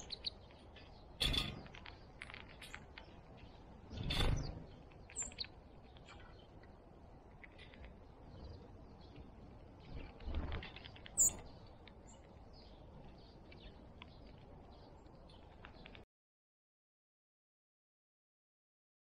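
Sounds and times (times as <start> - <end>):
rustle: 0.0 - 16.0
small birds chirping: 0.0 - 16.1.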